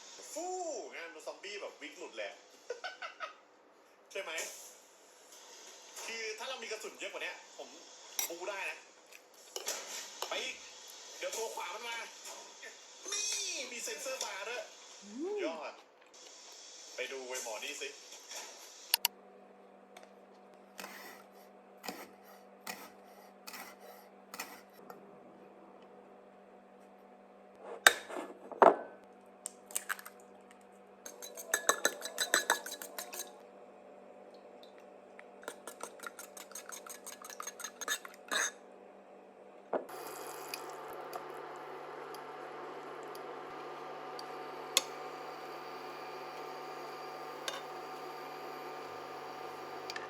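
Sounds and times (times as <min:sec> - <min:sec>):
dishes and utensils clinking: 0:31.1 - 0:33.4, 0:35.4 - 0:38.6.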